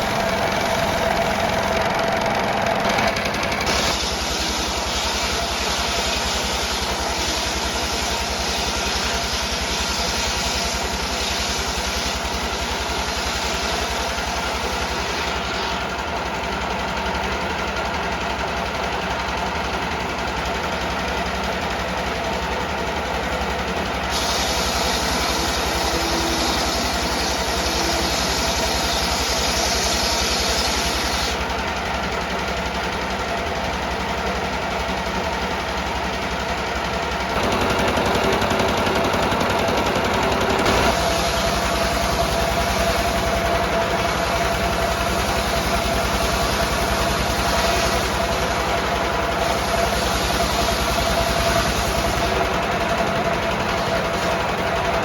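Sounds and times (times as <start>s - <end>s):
diesel engine knocking: 0.0s - 4.8s, 16.0s - 24.0s, 31.4s - 55.0s
bright hiss: 24.2s - 31.2s.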